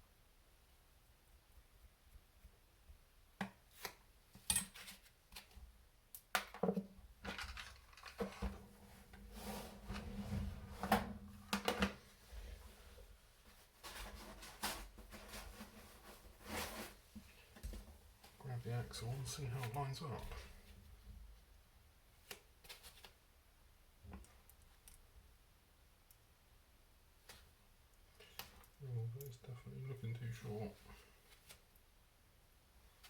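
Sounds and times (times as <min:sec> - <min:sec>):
small parts clattering on workbench: 0:06.5 - 0:08.6.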